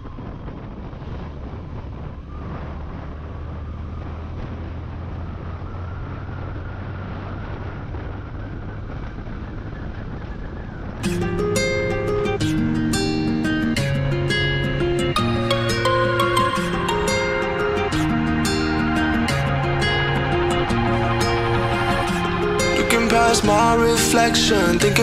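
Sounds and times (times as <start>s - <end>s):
vehicle engine humming: 0.0s - 25.0s
wind noise on microphone: 0.0s - 25.0s
music: 11.0s - 25.0s.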